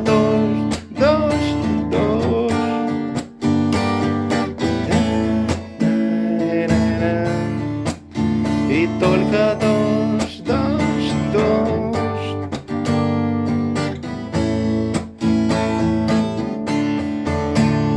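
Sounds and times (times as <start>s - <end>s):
acoustic guitar strumming: 0.0s - 17.9s.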